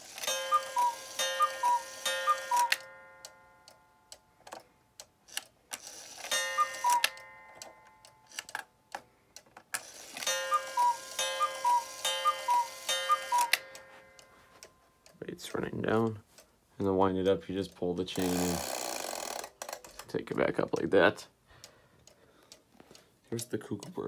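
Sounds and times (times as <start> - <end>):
cuckoo clock calls: 0.0 - 4.2, 5.8 - 8.6, 9.8 - 14.7, 18.1 - 19.8
clock ticking: 0.0 - 5.5, 6.1 - 16.5, 17.2 - 24.0.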